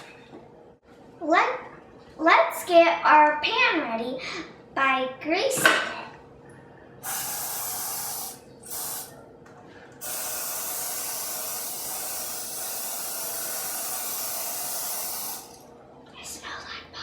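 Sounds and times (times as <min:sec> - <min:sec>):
aerosol spray hissing: 0:07.0 - 0:09.1, 0:10.0 - 0:15.6.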